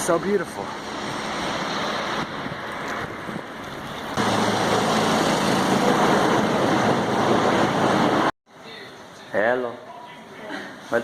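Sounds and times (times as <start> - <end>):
wind rushing over microphone: 0.6 - 8.3.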